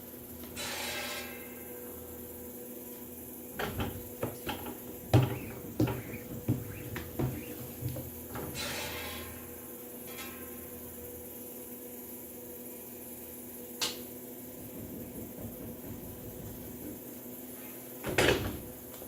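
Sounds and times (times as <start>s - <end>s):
steady electrical hum: 1.6s - 19.0s
irregular knocks and clatters: 3.6s - 8.6s, 14.6s - 17.0s.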